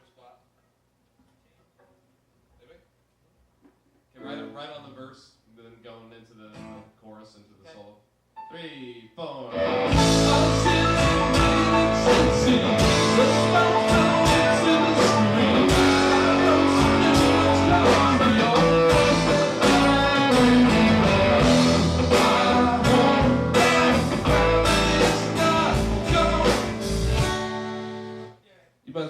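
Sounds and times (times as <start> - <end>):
rock band playing: 9.5 - 28.3.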